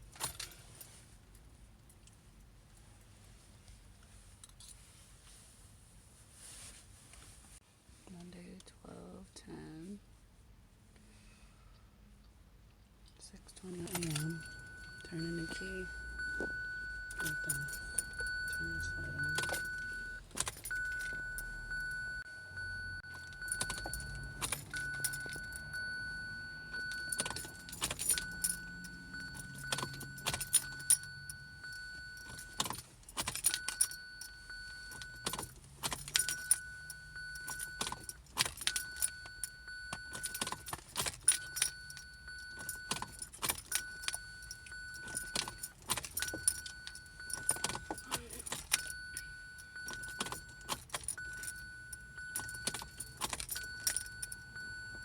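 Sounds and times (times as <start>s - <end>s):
high electronic warning tone: 13.7s - 32.6s.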